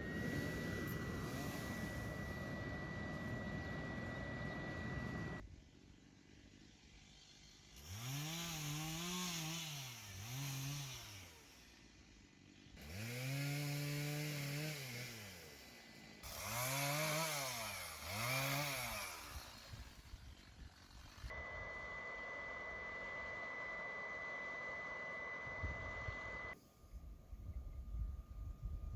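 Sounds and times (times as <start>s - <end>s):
chainsaw revving: 7.0s - 21.3s.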